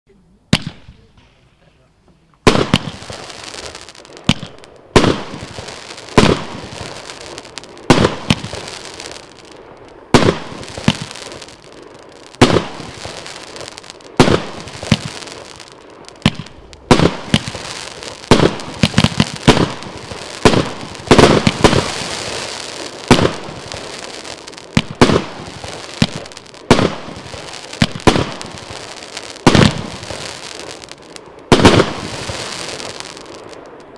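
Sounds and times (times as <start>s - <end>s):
firework bangs: 0.5s - 1.4s, 2.4s - 33.9s.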